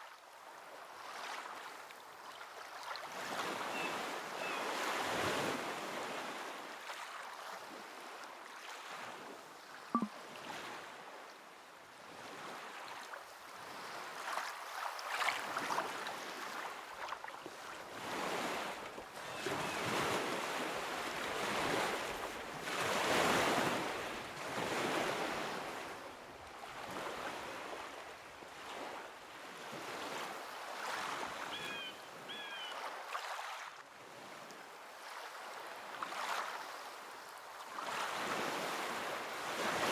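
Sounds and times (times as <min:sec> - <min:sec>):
ocean waves washing onto shore: 0:12.3 - 0:31.6, 0:37.7 - 0:39.9.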